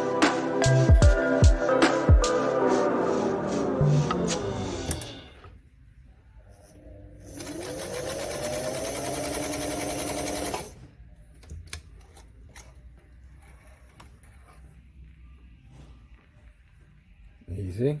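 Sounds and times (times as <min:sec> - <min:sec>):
sewing machine motor whine: 0:07.3 - 0:10.8.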